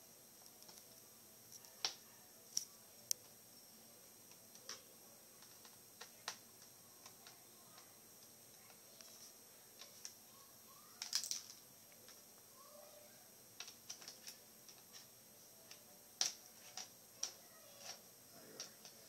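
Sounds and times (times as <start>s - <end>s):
plastic and metal parts handled: 11.0s - 12.2s, 13.6s - 15.1s.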